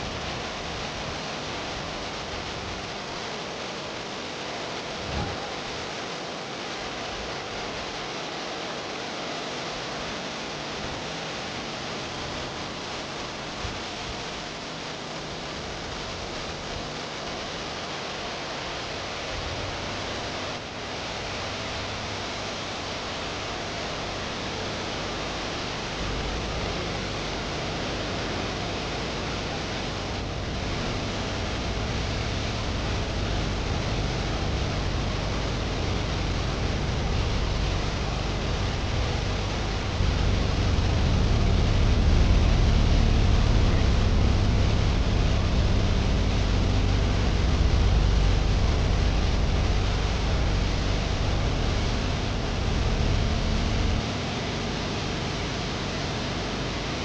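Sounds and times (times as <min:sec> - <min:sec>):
deep low rumble: 0:30.2 - 0:54.1.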